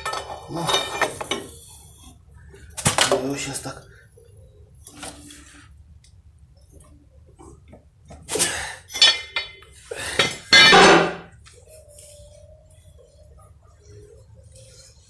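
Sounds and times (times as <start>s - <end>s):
metal tools clanking and scraping: 0.0s - 1.6s, 8.9s - 11.3s.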